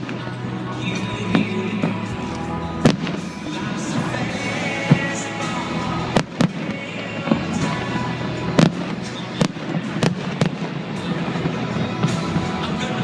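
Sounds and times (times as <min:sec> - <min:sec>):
fireworks bursting: 0:00.0 - 0:13.0
music playing: 0:00.0 - 0:13.0.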